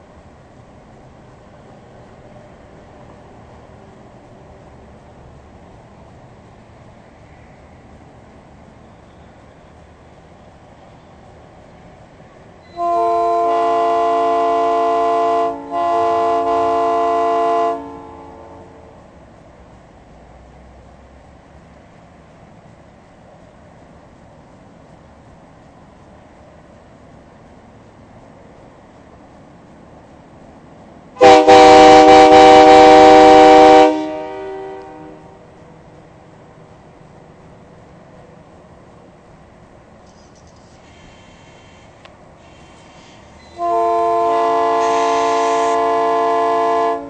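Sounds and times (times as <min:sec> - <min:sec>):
air train horn blasts: 0:12.6 - 0:19.0, 0:31.2 - 0:35.4, 0:40.9 - 0:47.0.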